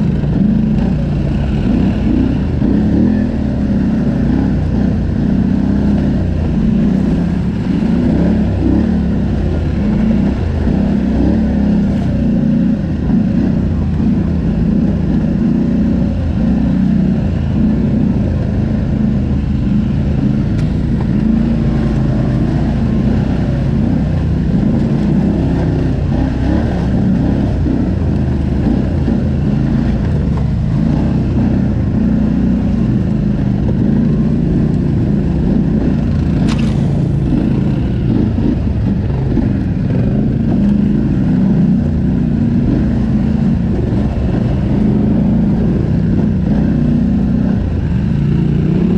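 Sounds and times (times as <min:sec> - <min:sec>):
atv engine running: 0:00.0 - 0:48.9.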